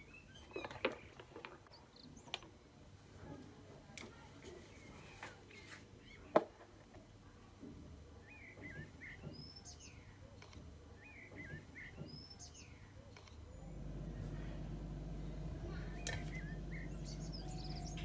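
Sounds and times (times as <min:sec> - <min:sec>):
songbirds chirping: 0:00.0 - 0:18.0
low rumble: 0:13.6 - 0:18.0.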